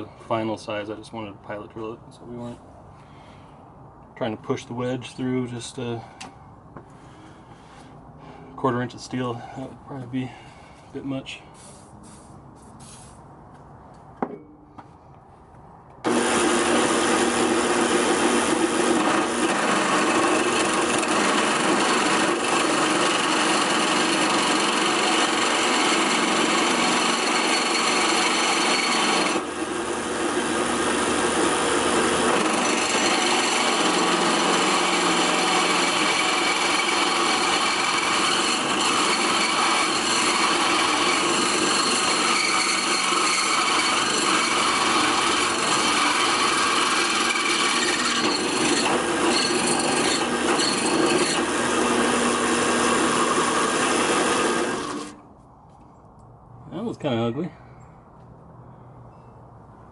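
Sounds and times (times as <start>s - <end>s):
drill bit scraping through steel: 16.1s - 55.2s
drill press motor whining: 16.1s - 55.2s.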